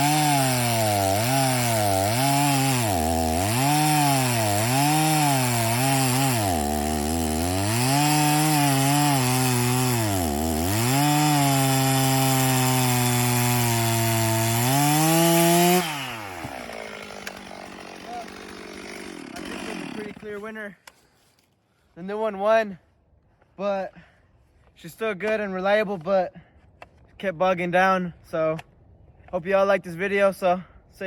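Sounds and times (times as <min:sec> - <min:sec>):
chainsaw cutting log: 0:00.0 - 0:20.6.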